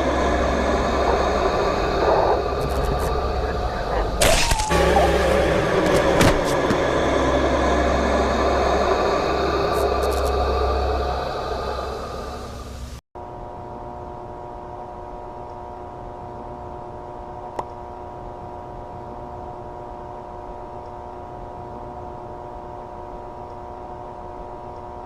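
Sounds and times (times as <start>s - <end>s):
electronic drone: 0.0s - 14.9s.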